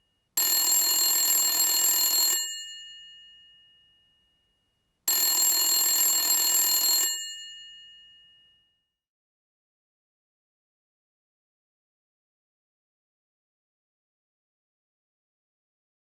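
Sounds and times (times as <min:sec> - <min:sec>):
telephone bell ringing: 0:00.4 - 0:04.2, 0:05.1 - 0:08.7.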